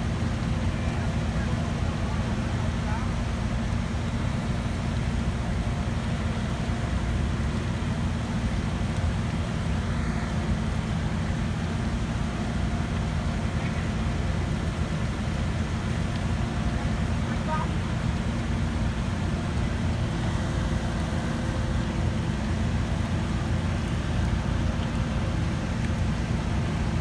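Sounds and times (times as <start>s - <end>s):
machinery engine rumbling: 0.0s - 27.0s.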